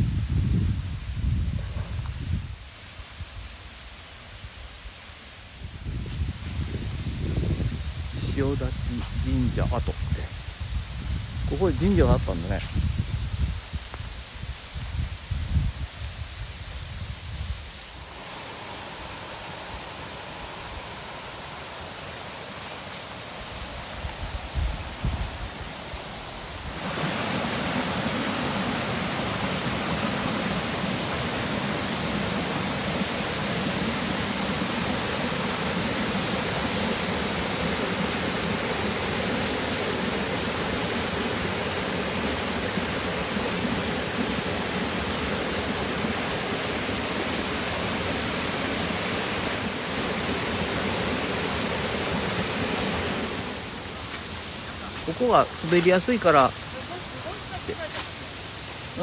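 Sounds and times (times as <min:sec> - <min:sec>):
waterfall rushing: 0:17.7 - 0:59.0.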